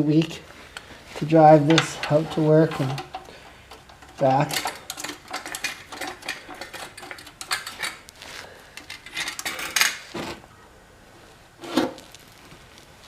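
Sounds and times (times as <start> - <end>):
metal objects clinking and scraping: 1.6 - 10.4.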